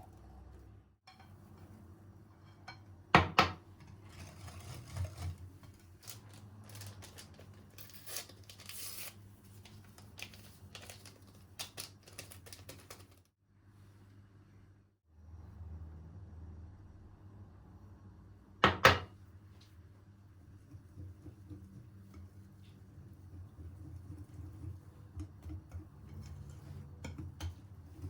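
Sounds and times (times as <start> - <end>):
rustling and crinkling: 4.0 - 13.3.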